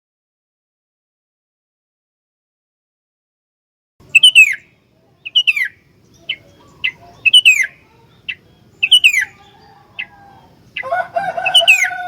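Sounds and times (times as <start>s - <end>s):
bird singing: 4.0s - 12.0s.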